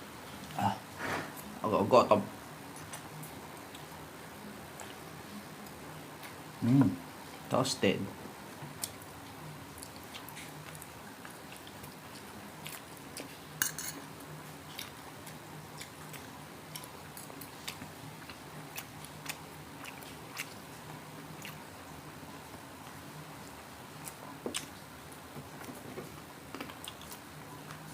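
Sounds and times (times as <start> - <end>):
chewing crispy food: 8.7 - 27.9
cutlery and dishes clicking: 13.6 - 14.0.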